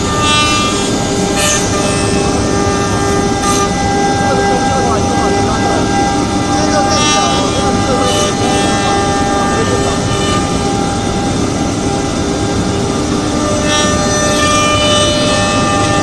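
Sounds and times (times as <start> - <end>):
cutting noise: 0.0 - 11.4
router spindle whine: 0.0 - 16.0.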